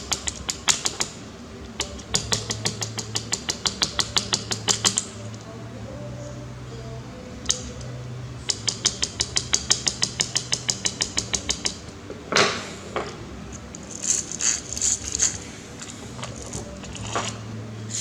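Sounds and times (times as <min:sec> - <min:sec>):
rapid even clicks: 0:00.0 - 0:05.5, 0:07.2 - 0:18.0
small parts rattling: 0:00.0 - 0:05.5, 0:07.4 - 0:18.0
plastic parts scraping: 0:09.1 - 0:18.0.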